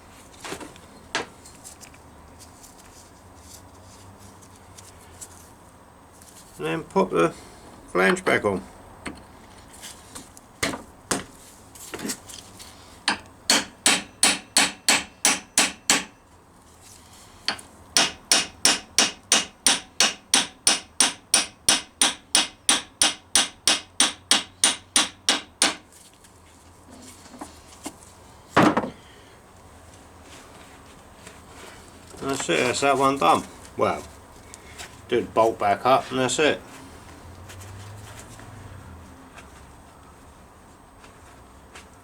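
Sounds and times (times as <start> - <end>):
hammer blows on metal: 13.1 - 16.2.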